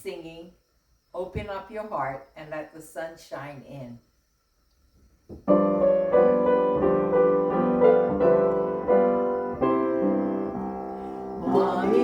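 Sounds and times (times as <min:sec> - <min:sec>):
piano playing repeated chords: 0:05.5 - 0:12.0.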